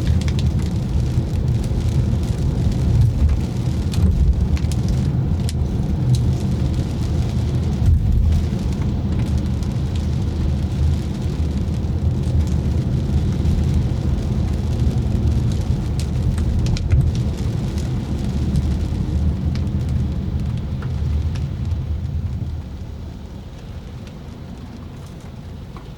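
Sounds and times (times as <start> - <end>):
car engine and road rumble: 0.0 - 25.9
raindrops ticking on car: 0.0 - 25.9.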